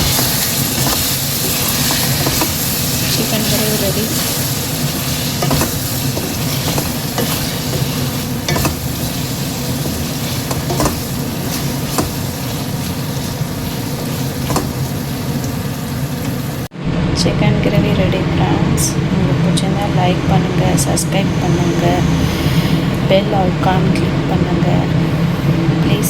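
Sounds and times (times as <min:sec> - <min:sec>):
gravy sizzling and bubbling: 0:00.0 - 0:16.7.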